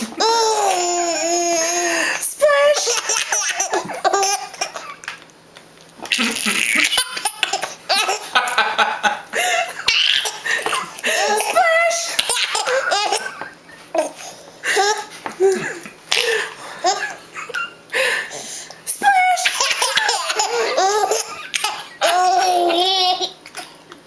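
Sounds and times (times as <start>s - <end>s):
high-pitched laughter: 6.1s - 14.1s.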